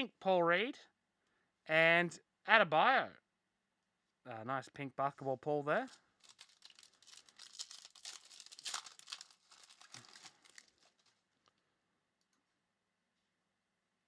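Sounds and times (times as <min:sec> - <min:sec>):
foil wrapper crinkling and tearing: 0:05.8 - 0:11.6.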